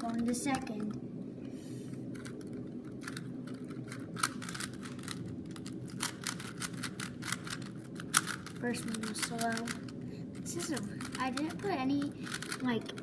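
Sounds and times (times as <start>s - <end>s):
low hum: 0.0s - 13.0s
plastic puzzle cube clicking: 3.0s - 9.8s, 10.5s - 13.0s.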